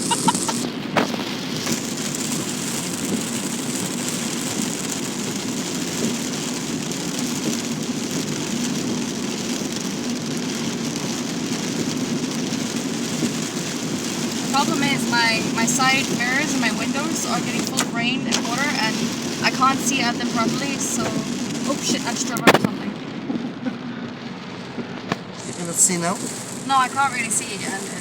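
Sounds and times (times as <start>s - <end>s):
rain on a car: 0.0s - 28.0s
road and engine hum: 5.3s - 28.0s.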